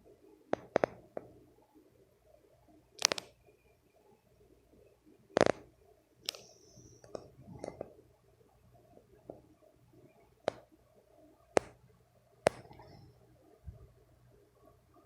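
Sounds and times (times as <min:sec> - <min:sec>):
sharp clicks and knocks: 0:00.5 - 0:01.3, 0:05.4 - 0:05.7, 0:10.4 - 0:10.7, 0:11.6 - 0:11.8, 0:12.4 - 0:13.0.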